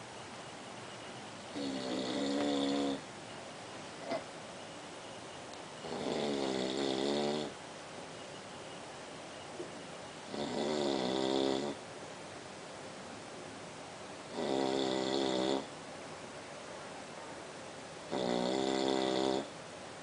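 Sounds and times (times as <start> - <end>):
person snoring: 1.6 - 3.0, 5.8 - 7.6, 10.3 - 11.8, 14.3 - 15.7, 18.1 - 19.5.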